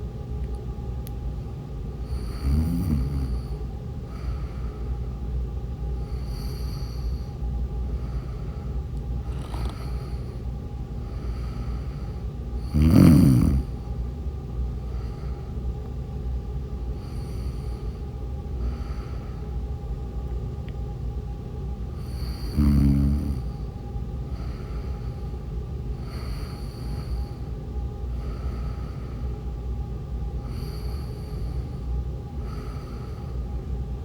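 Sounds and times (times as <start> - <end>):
steady background hum: 0.0 - 34.0
quiet breathing: 2.0 - 14.1, 14.7 - 16.1, 16.8 - 20.0, 21.9 - 33.8
person snoring: 2.1 - 3.6, 12.6 - 13.8, 22.0 - 23.6.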